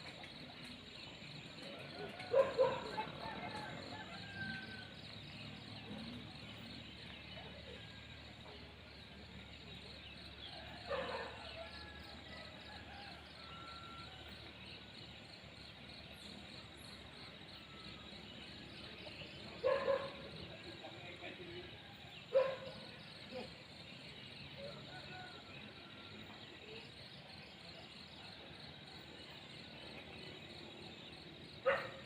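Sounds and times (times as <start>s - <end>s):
insects chirping: 0.1s - 11.5s, 13.5s - 25.3s.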